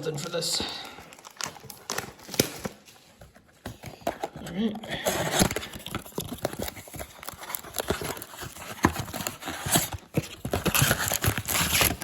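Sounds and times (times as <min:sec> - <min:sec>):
cellophane crinkling: 0:00.1 - 0:12.0
cardboard box clicks and knocks: 0:05.3 - 0:12.0.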